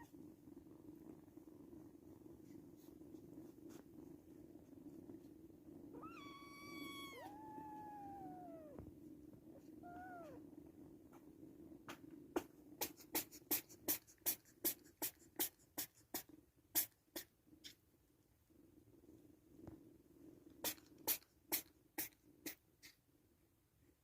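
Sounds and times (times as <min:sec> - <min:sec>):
kittens mewing: 0:06.0 - 0:08.8
kittens suckling clicks: 0:11.8 - 0:17.8, 0:20.5 - 0:23.0.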